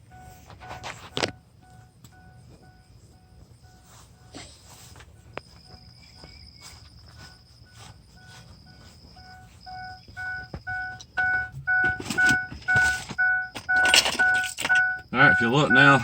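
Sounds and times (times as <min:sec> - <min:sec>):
truck warning chime beeping: 0:00.0 - 0:16.0
rustling and knocks: 0:10.0 - 0:14.8.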